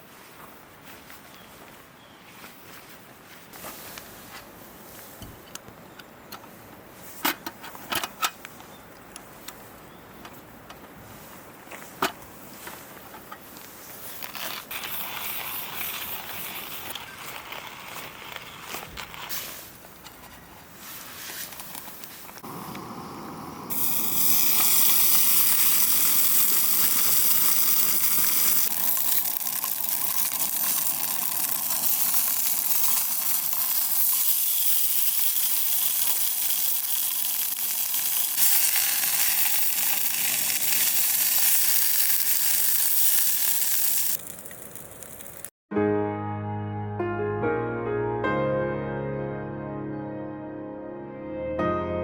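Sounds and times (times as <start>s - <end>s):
food sizzling in a pan: 14.7s - 18.1s, 22.4s - 45.5s.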